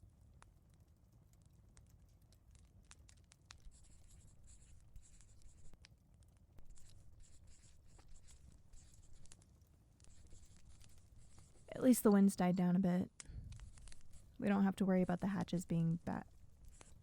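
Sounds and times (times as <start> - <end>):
fireplace rumble and crackles: 0.0 - 17.0
pencil scratching on paper: 3.6 - 5.8, 6.6 - 9.4, 10.0 - 11.9, 13.6 - 17.0.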